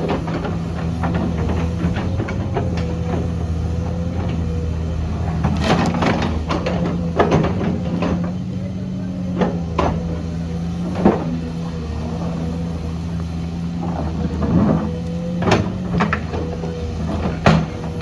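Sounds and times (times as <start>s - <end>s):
diesel engine of earthmover running: 0.0s - 18.0s
sharp knocks and clanks: 13.8s - 18.0s.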